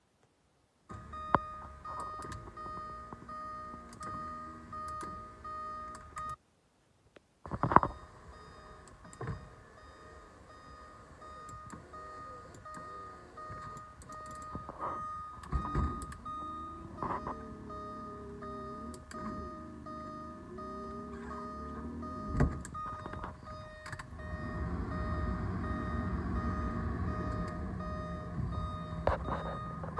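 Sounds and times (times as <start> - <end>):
electronic warning tone: 7.9 - 29.9.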